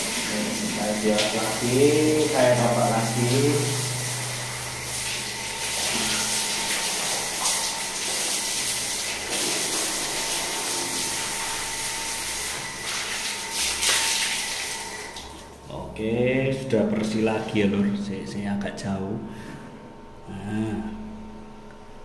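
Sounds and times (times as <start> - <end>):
pressure washer spraying water: 0.0 - 15.1.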